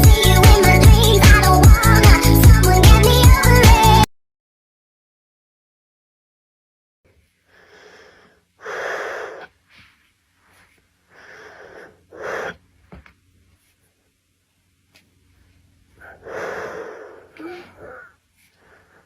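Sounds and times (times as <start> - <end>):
person breathing out heavily: 7.4 - 9.5, 11.1 - 12.6, 16.0 - 19.0.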